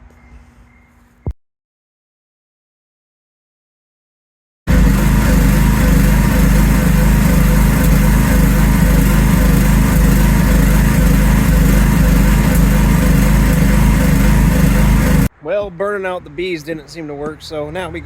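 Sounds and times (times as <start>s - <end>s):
small engine running: 4.7s - 15.3s.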